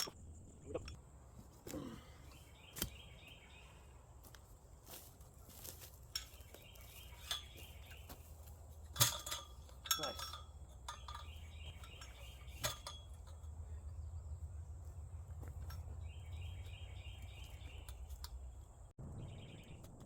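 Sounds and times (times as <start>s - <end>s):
low steady hum: 0.0s - 20.0s
metallic clinks and knocks: 5.8s - 14.1s, 15.2s - 18.9s.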